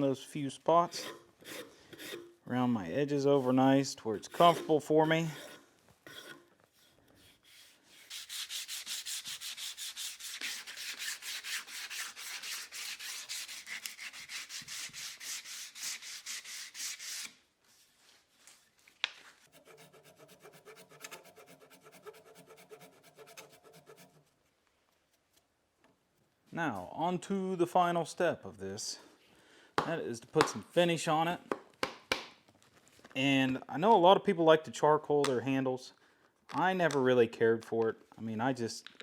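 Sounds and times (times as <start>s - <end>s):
sandpaper rubbing on wood: 7.2s - 17.3s, 19.5s - 24.2s.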